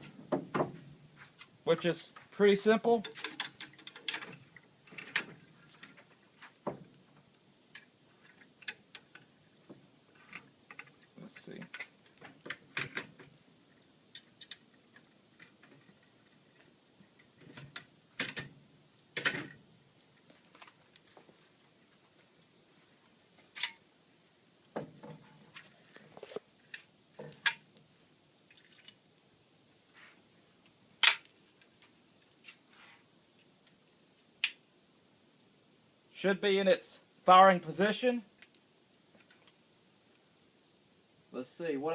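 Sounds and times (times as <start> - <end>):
metal clicks of gun assembly: 31.0 - 31.3.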